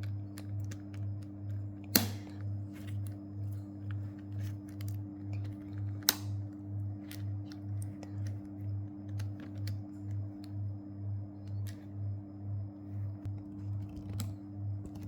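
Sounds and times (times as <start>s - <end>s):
sharp plastic snaps: 1.8s - 2.5s.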